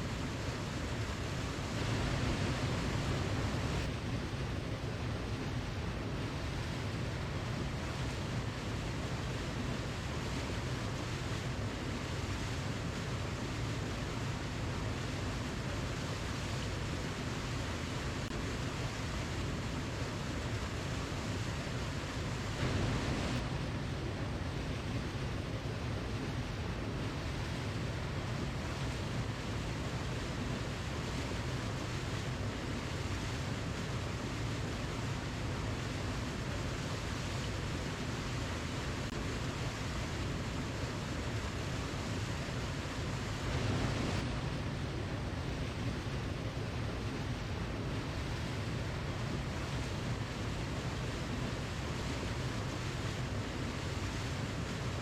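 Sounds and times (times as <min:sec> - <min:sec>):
waterfall rushing: 0:21.1 - 0:23.7, 0:39.4 - 0:44.3.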